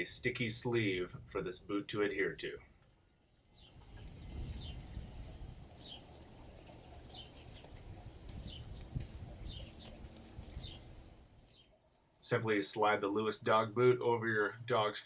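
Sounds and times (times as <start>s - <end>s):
low rumble of wind or handling: 2.5s - 12.1s
bird chirping: 3.2s - 5.0s, 5.8s - 11.9s.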